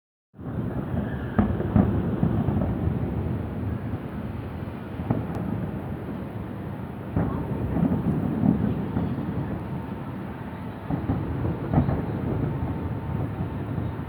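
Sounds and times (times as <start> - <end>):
fireworks booming: 0.4 - 14.0
fireworks sharp bangs: 0.4 - 14.0.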